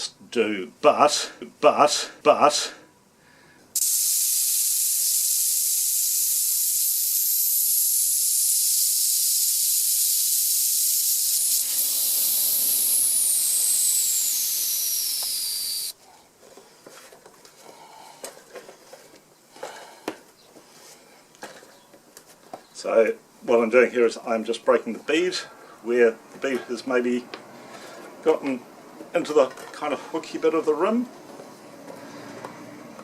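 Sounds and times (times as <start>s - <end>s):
air hissing out of tyre valve: 3.8s - 16.0s.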